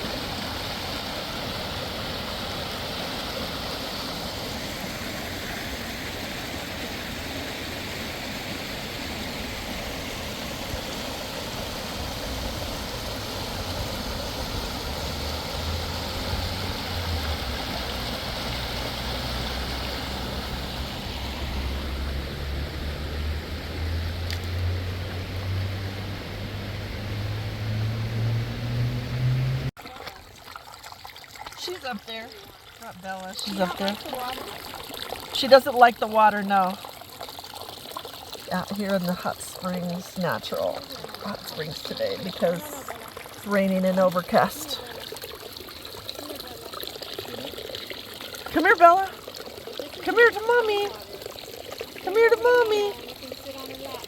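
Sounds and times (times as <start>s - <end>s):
rushing river water: 0.0s - 54.0s
low engine hum: 10.6s - 29.8s.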